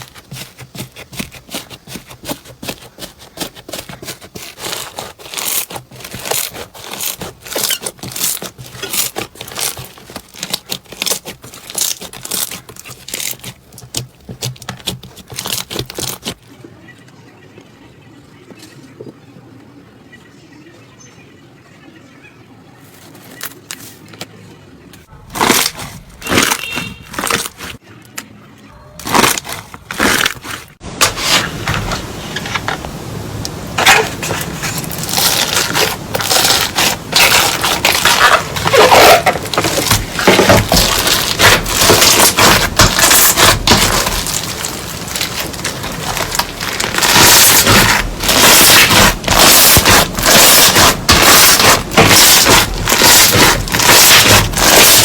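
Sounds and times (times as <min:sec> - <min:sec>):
slime crackling and popping: 0:03.4 - 0:16.4, 0:25.3 - 0:27.8, 0:29.0 - 0:31.4, 0:33.8 - 0:55.0.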